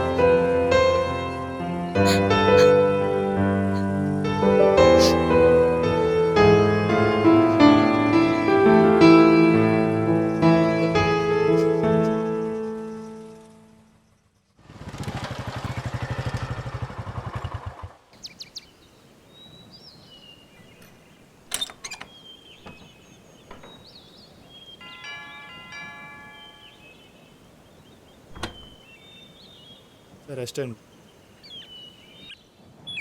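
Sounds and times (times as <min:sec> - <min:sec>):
birds chirping: 0:00.0 - 0:06.1, 0:06.8 - 0:14.6, 0:18.1 - 0:33.0
vehicle engine running roughly: 0:14.6 - 0:18.0.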